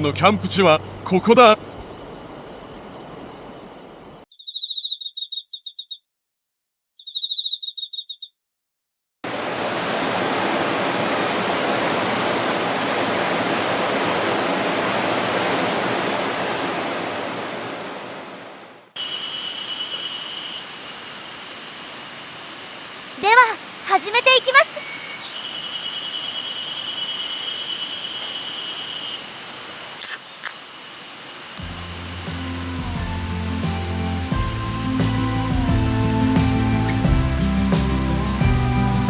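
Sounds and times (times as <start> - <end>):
rapid high chirps: 4.3 - 6.0, 7.0 - 8.3
rushing river water: 9.3 - 39.0
thin steady high tone: 19.0 - 21.5, 23.2 - 29.4.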